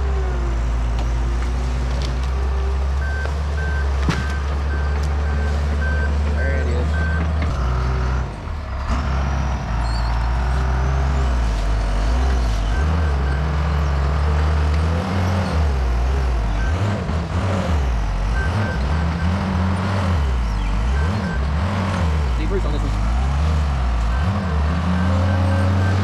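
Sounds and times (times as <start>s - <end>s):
bulldozer diesel engine: 0.0s - 26.0s
reversing alarm beeps: 3.0s - 8.3s, 18.3s - 19.4s, 24.1s - 26.0s.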